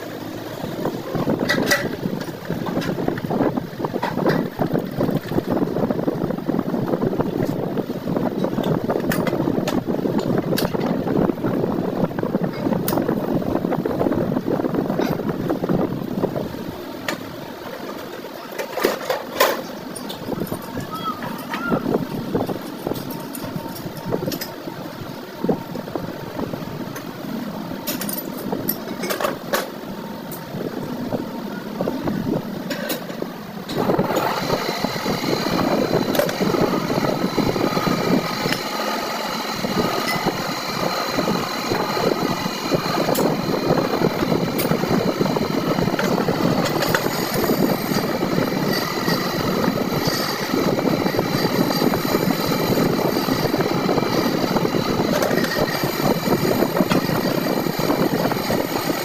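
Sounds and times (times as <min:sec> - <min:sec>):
motor running with high whine: 0:00.0 - 0:59.0
light workshop noise: 0:14.9 - 0:59.0.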